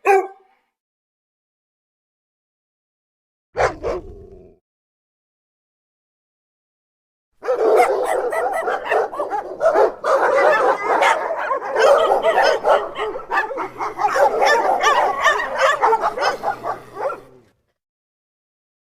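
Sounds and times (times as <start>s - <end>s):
dogs barking and yipping: 0.0s - 0.4s, 3.6s - 4.0s, 7.4s - 17.5s.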